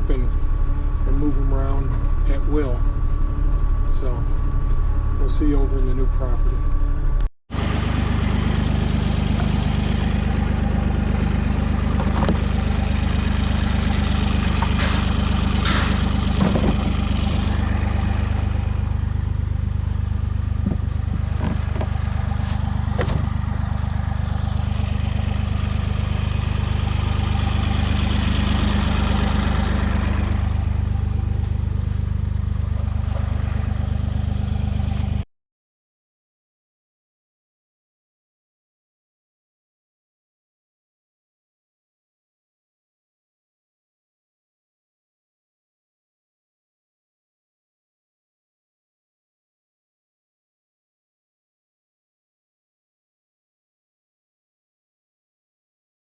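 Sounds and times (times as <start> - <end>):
loader diesel engine running: 0.0 - 35.2
sharp knocks and rattles: 13.8 - 17.5.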